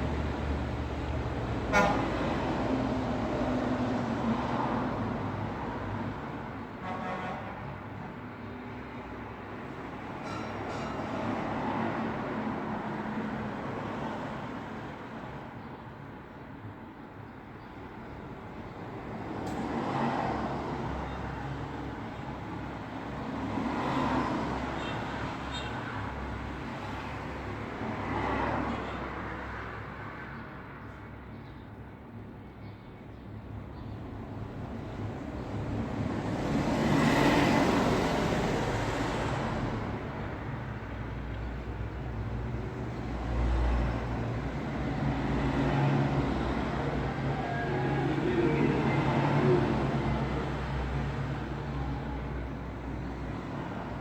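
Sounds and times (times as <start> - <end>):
vehicles passing: 0.0 - 8.0, 33.3 - 54.0
low rumble of traffic: 0.0 - 54.0.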